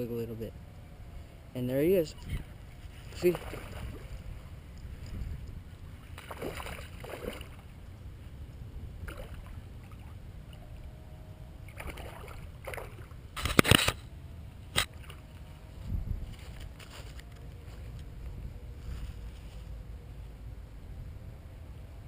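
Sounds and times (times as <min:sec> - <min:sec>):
water: 0:02.0 - 0:13.8, 0:14.6 - 0:15.7
wind on microphone: 0:02.1 - 0:13.7, 0:15.5 - 0:16.9
sharp click: 0:13.4 - 0:14.0.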